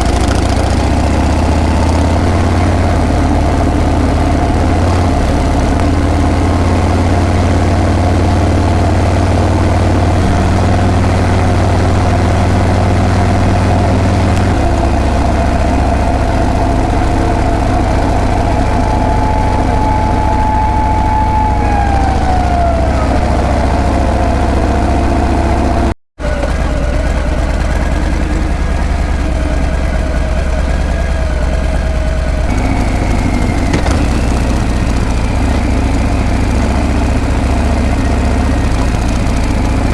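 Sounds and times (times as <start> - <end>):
motorcycle exhaust droning: 0.0 - 39.9
whine falling in pitch: 2.3 - 25.9.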